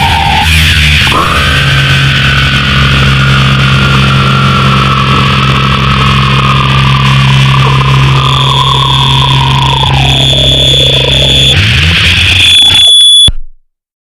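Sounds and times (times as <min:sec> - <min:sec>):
thin high tone sinking in pitch: 0:00.0 - 0:13.3
distorted electronic drone: 0:00.0 - 0:13.4
steady low hum: 0:01.0 - 0:11.6.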